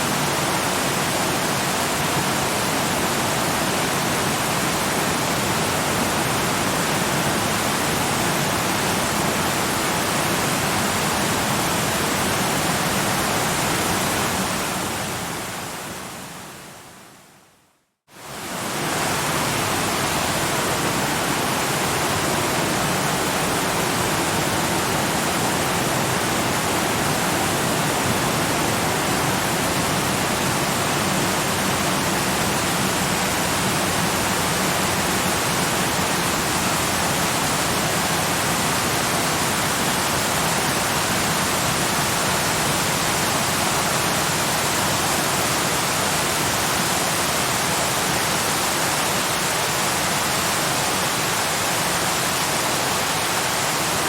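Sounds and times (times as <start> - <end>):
waterfall rushing: 18.2 - 54.0.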